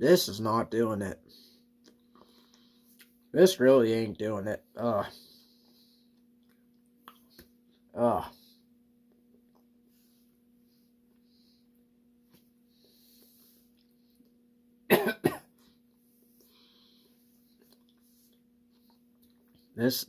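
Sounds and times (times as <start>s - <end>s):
faint steady hum: 0.0s - 20.0s
man coughing: 14.9s - 15.6s.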